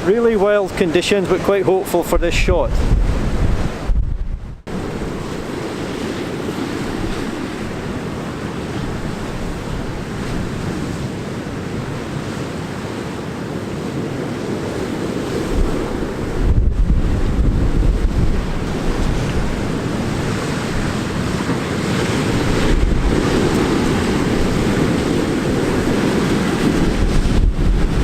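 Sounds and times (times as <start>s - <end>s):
surf breaking over rocks: 0.0s - 28.0s
wind: 0.0s - 28.0s.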